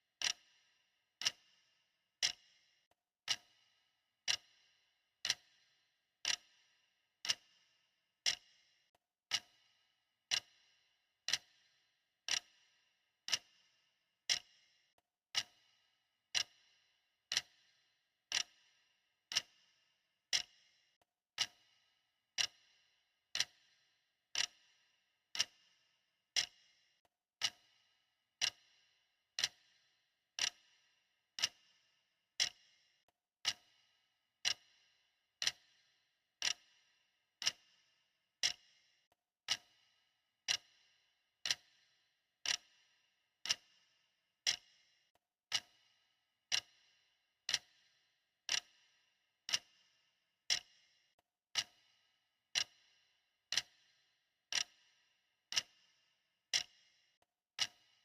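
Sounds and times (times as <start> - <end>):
clock ticking: 0.2 - 0.4, 1.2 - 1.4, 2.2 - 2.4, 3.2 - 3.5, 4.2 - 4.5, 5.2 - 5.5, 6.2 - 6.5, 7.2 - 7.5, 8.2 - 8.5, 9.3 - 9.6, 10.3 - 10.6, 11.3 - 11.6, 12.3 - 12.5, 13.3 - 13.5, 14.3 - 14.5, 15.3 - 15.6, 16.3 - 16.6, 17.3 - 17.6, 18.3 - 18.6, 19.3 - 19.6, 20.3 - 20.6, 21.4 - 21.6, 22.4 - 22.6, 23.4 - 23.6, 24.4 - 24.6, 25.4 - 25.6, 26.4 - 26.6, 27.4 - 27.8, 28.4 - 28.6, 29.4 - 29.7, 30.4 - 30.6, 31.4 - 31.6, 32.4 - 32.6, 33.4 - 33.8, 34.4 - 34.7, 35.4 - 35.8, 36.4 - 36.7, 37.4 - 37.6, 38.4 - 38.6, 39.4 - 39.8, 40.4 - 40.7, 41.4 - 41.7, 42.4 - 42.7, 43.4 - 43.7, 44.4 - 44.7, 45.5 - 45.8, 46.5 - 46.8, 47.5 - 47.8, 48.5 - 48.8, 49.5 - 49.7, 50.5 - 50.8, 51.5 - 51.9, 52.5 - 52.8, 53.5 - 53.8, 54.5 - 54.8, 55.5 - 55.8, 56.5 - 56.8, 57.6 - 57.9.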